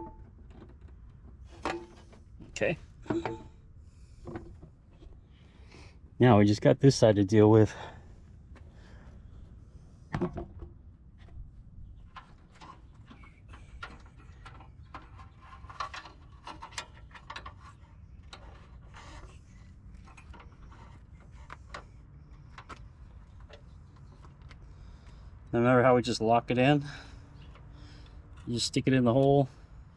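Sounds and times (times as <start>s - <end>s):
light clicks and taps of cable fittings: 20.0s - 25.2s.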